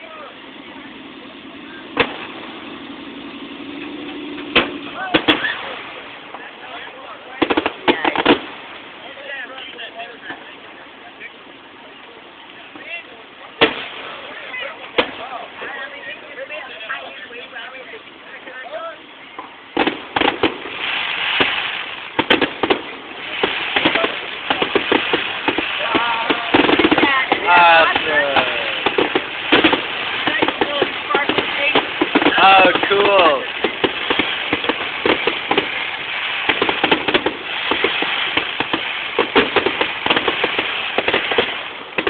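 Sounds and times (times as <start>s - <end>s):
fireworks bangs: 0.0s - 42.0s
fireworks crackling: 0.0s - 42.0s
steady background hiss: 0.0s - 42.0s.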